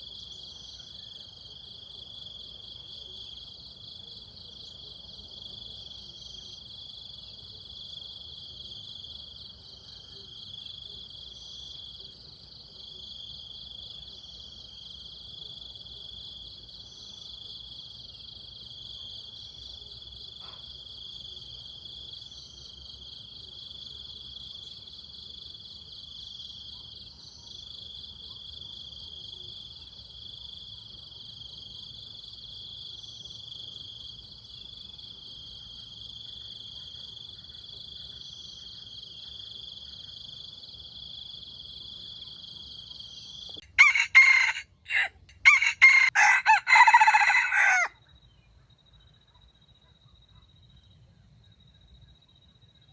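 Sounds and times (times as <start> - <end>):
insects trilling: 35.7 - 48.4.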